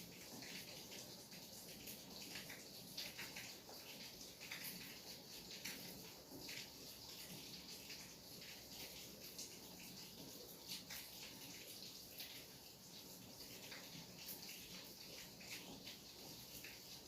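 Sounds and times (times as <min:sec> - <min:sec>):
raindrop splashes: 0:00.0 - 0:17.0.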